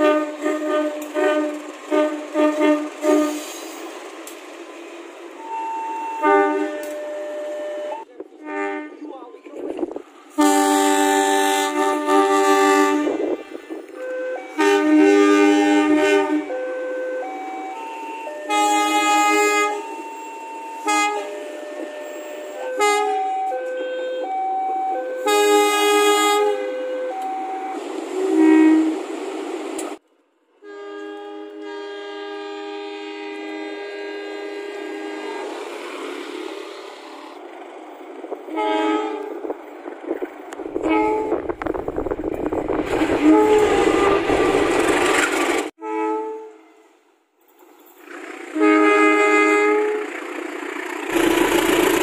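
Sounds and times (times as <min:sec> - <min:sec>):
multi-tone train air horns: 0:00.0 - 0:03.9, 0:05.4 - 0:09.2, 0:10.3 - 0:24.4, 0:25.0 - 0:29.1, 0:30.6 - 0:35.8, 0:38.5 - 0:39.5, 0:40.8 - 0:41.8, 0:42.8 - 0:47.1, 0:48.4 - 0:50.4, 0:51.1 - 0:52.0.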